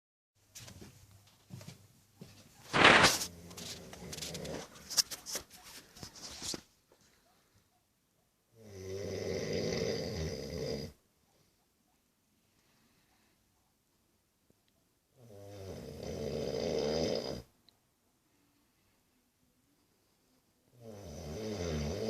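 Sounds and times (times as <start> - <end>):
man snoring: 8.6 - 11.0, 15.2 - 17.5, 20.8 - 22.0.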